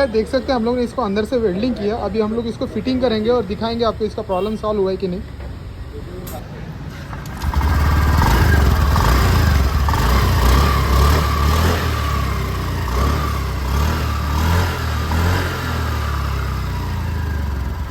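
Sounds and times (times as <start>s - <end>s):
scooter engine running: 7.1s - 17.9s.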